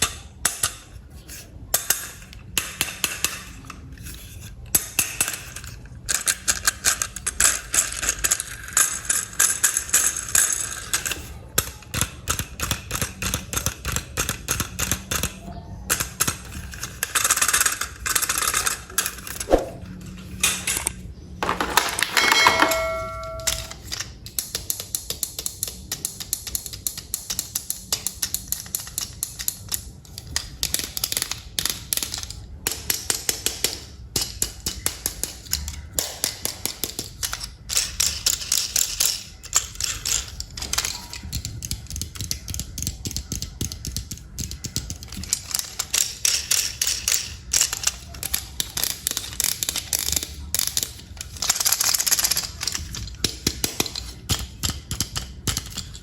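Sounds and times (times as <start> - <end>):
plastic toy parts clicking: 0.0 - 19.5, 23.2 - 56.0
low steady hum: 21.4 - 23.8.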